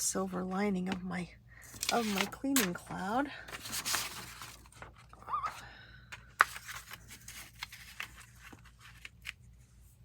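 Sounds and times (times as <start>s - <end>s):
paper rustling: 1.7s - 5.2s, 6.1s - 9.5s.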